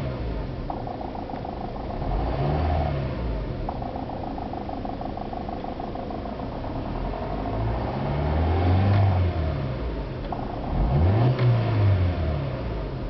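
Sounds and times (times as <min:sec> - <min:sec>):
car engine idling with ticking knock: 0:00.0 - 0:13.0
engine revving: 0:00.0 - 0:13.0.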